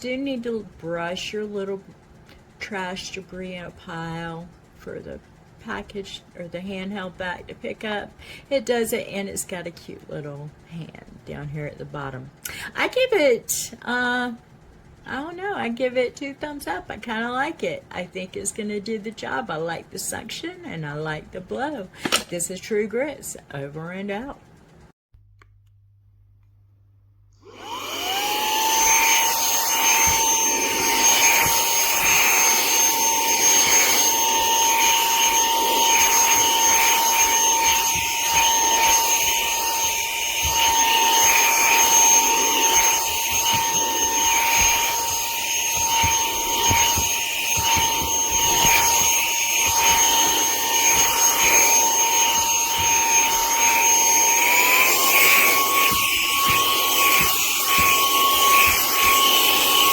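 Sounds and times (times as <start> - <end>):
handheld vacuum motor whining: 27.4 - 59.9.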